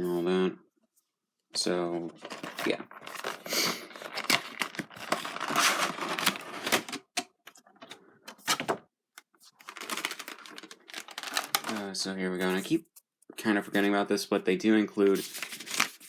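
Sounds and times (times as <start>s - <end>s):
cardboard box rustling: 2.2s - 7.2s, 9.4s - 11.8s.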